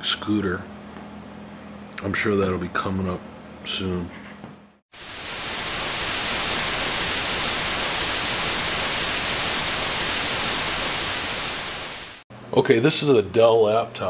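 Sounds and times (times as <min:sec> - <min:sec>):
white noise static hiss: 0:05.0 - 0:14.0.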